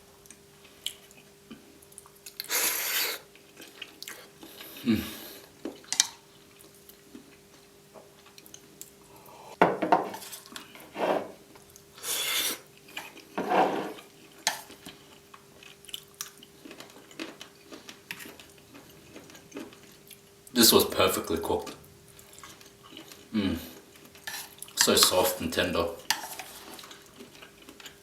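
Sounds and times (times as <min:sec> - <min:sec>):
cutlery scraping on a plate: 0:10.0 - 0:11.4, 0:13.0 - 0:14.7, 0:24.2 - 0:24.6, 0:26.1 - 0:26.8.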